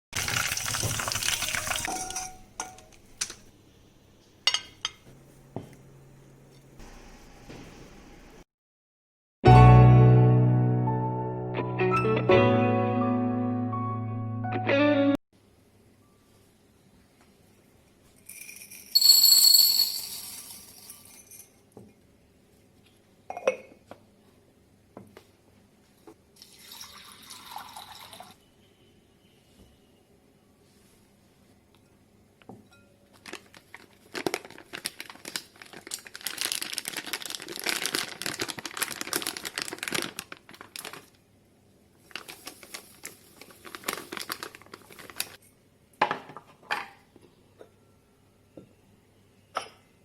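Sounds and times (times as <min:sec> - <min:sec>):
running tap water: 0:00.2 - 0:02.1
dishes and utensils clinking: 0:01.4 - 0:03.4, 0:04.5 - 0:05.1
bright metallic clink ringing: 0:19.0 - 0:21.2.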